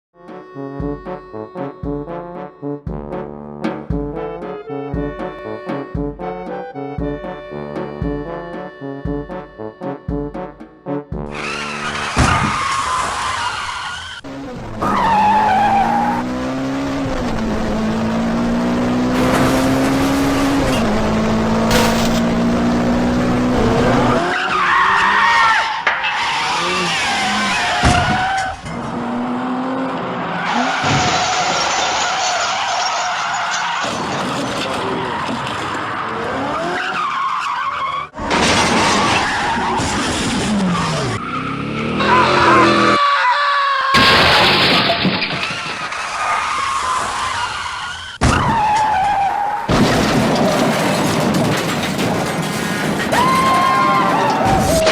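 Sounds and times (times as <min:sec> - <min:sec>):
music: 0:00.2 - 0:11.5
car engine revving: 0:11.2 - 0:43.0
tyres skidding and squealing: 0:11.2 - 0:54.9.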